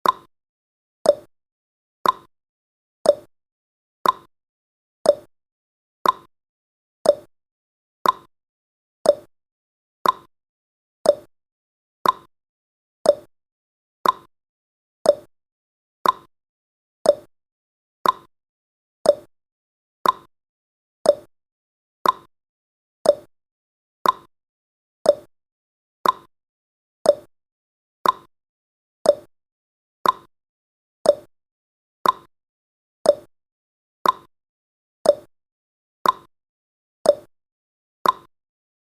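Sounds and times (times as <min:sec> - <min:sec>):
timer ticking: 0:00.0 - 0:00.3, 0:01.0 - 0:01.3, 0:02.0 - 0:02.3, 0:03.0 - 0:03.3, 0:04.0 - 0:04.3, 0:05.1 - 0:05.3, 0:06.0 - 0:06.3, 0:07.0 - 0:07.3, 0:08.0 - 0:08.3, 0:09.0 - 0:09.3, 0:10.0 - 0:10.3, 0:11.0 - 0:11.3, 0:12.0 - 0:12.3, 0:13.0 - 0:13.3, 0:14.0 - 0:14.3, 0:15.0 - 0:15.3, 0:16.0 - 0:16.3, 0:17.0 - 0:17.3, 0:18.0 - 0:18.3, 0:19.0 - 0:19.3, 0:20.0 - 0:20.3, 0:21.0 - 0:21.3, 0:22.0 - 0:22.3, 0:23.0 - 0:23.3, 0:24.0 - 0:24.3, 0:25.0 - 0:25.3, 0:26.0 - 0:26.3, 0:27.0 - 0:27.3, 0:28.0 - 0:28.3, 0:29.0 - 0:29.3, 0:30.0 - 0:30.3, 0:31.0 - 0:31.3, 0:32.0 - 0:32.3, 0:33.0 - 0:33.3, 0:34.0 - 0:34.3, 0:35.0 - 0:35.3, 0:36.0 - 0:36.3, 0:37.1 - 0:37.3, 0:38.0 - 0:38.3.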